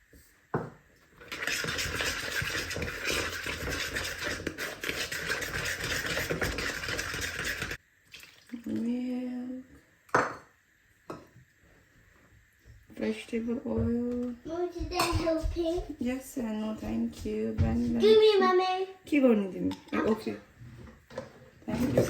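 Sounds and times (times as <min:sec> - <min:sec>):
whisking batter in a mixing bowl: 0:01.2 - 0:07.8.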